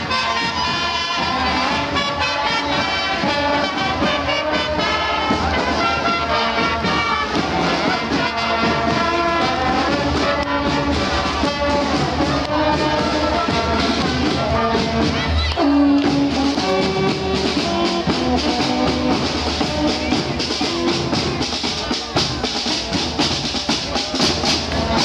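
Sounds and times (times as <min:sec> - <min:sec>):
brass band playing: 0:00.0 - 0:25.0.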